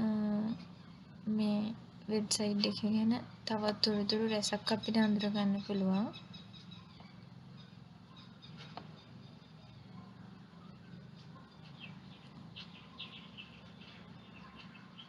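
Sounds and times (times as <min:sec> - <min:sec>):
faint background hum: 0:00.0 - 0:15.0
faint high bird chirps: 0:03.8 - 0:15.0.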